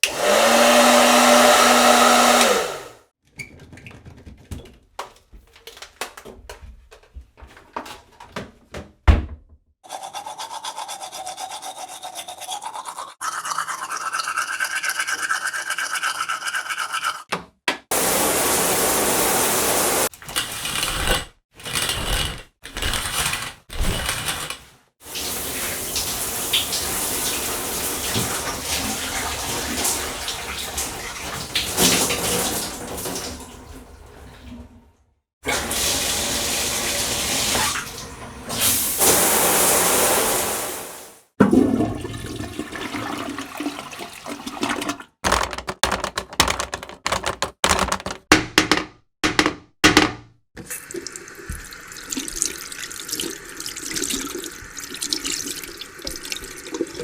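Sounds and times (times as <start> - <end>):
water gushing: 17.9 - 20.1, 25.0 - 34.2, 35.5 - 45.1, 50.6 - 57.0.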